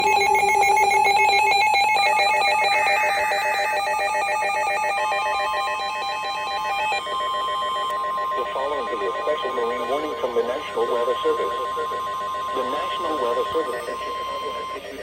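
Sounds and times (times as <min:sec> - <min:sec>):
pulsing electronic alert: 0:00.0 - 0:15.0
steady alert tone: 0:05.1 - 0:15.0.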